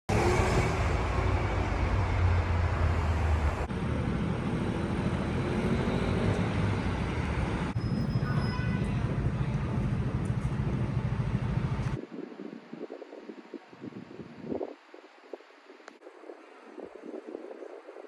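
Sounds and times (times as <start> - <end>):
road traffic rumble: 0.1 - 12.0.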